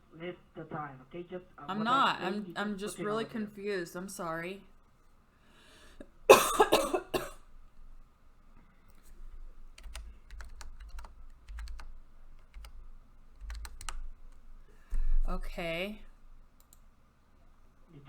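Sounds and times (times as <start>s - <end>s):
keyboard keystrokes: 9.7s - 15.0s.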